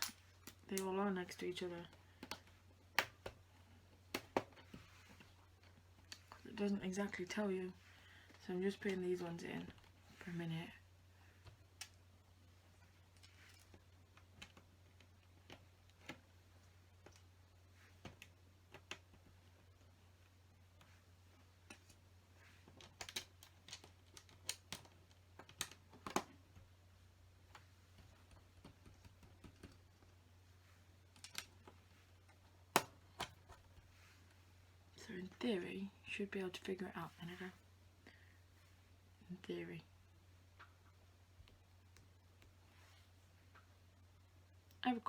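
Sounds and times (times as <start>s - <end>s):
faint low hum: 0.0s - 45.0s
plastic pieces clicking: 22.7s - 26.3s, 31.1s - 31.7s.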